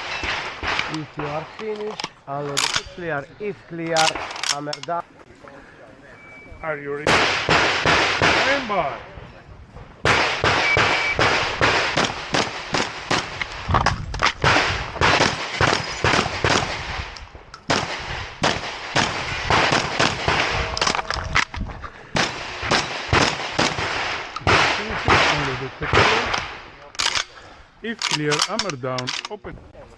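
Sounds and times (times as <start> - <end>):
shotgun shots: 0.0 - 2.9, 4.0 - 4.7, 7.0 - 9.0, 10.0 - 21.5, 22.1 - 27.3.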